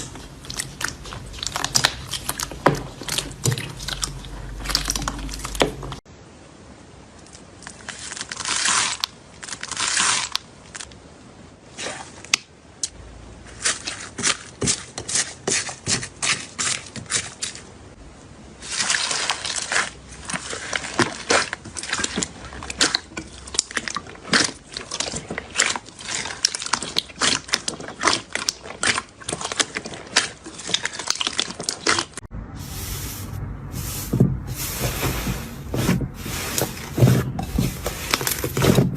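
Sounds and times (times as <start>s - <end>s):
wet squelching: 0.0s - 6.0s, 18.6s - 38.9s.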